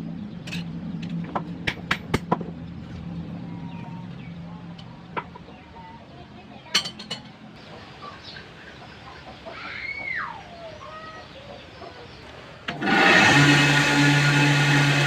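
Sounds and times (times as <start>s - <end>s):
chicken calling: 7.6s - 12.5s
electric power tool running: 12.7s - 15.0s.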